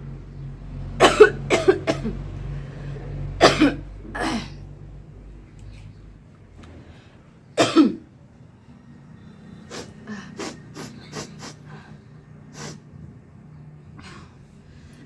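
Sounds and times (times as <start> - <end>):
person coughing: 1.0 - 2.2, 3.4 - 4.6, 7.6 - 8.0.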